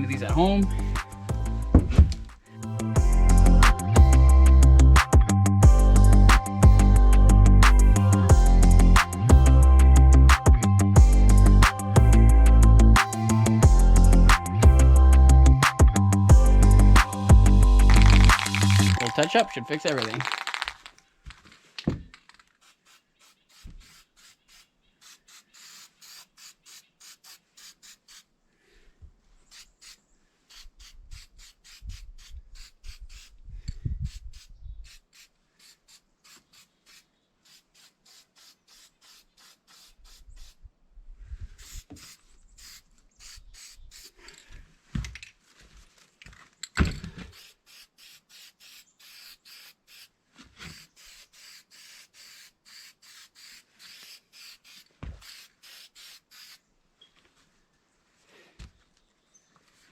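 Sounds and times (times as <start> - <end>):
dull knocks: 1.7 - 2.2
paintbrush scrubbing: 22.5 - 28.3, 29.4 - 33.4, 34.1 - 40.6, 50.7 - 56.6.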